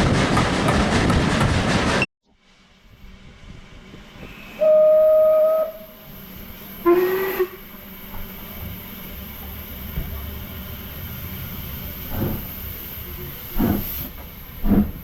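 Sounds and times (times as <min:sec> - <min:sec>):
steam locomotive whistle: 0:04.2 - 0:06.2, 0:06.8 - 0:07.7.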